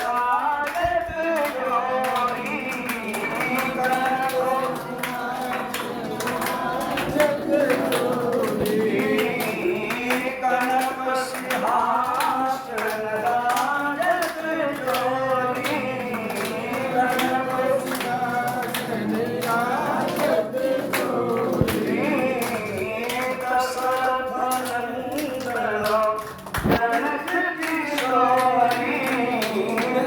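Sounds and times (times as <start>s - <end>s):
devotional singing: 0.0s - 30.0s
rhythmic percussive beat: 0.0s - 30.0s.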